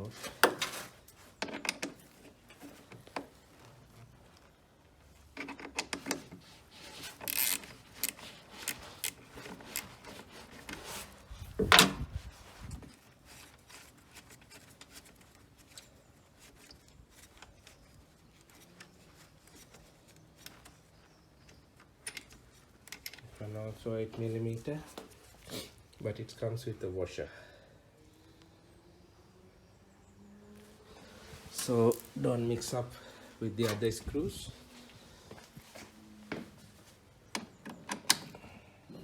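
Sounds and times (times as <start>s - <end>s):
hand tool clicking and scraping: 5.3s - 11.1s.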